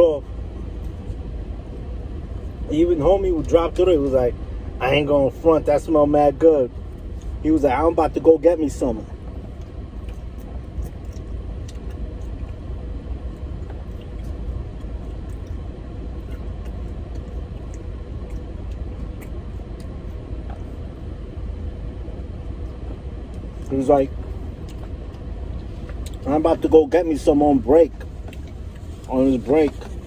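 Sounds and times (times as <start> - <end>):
air conditioning blowing: 0.0 - 30.0
car engine idling: 0.0 - 30.0
faint clicks and taps: 27.9 - 30.0.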